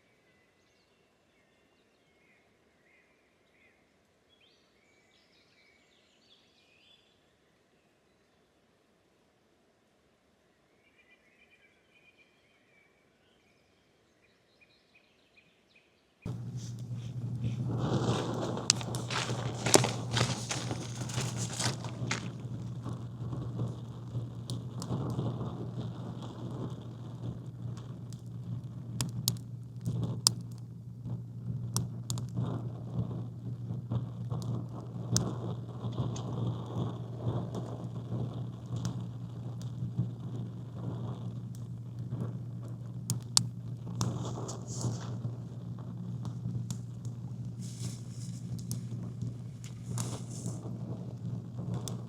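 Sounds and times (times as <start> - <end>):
campfire crackling: 16.3 - 52.0
wood popping: 16.3 - 52.0.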